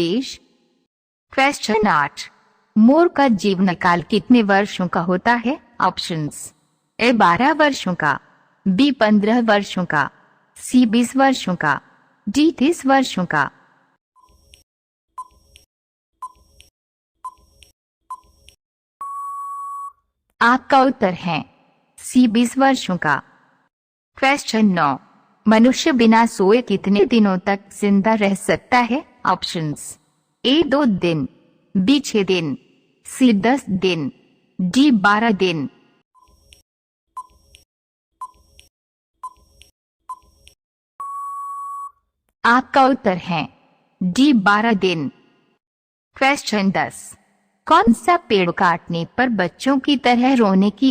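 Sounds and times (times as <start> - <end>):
short beeping ticks: 14.2 - 17.5, 37.2 - 37.6, 38.2 - 40.3
long steady beep: 19.0 - 20.0, 41.0 - 42.0
short electronic beeps: 19.0 - 20.0, 41.0 - 42.0.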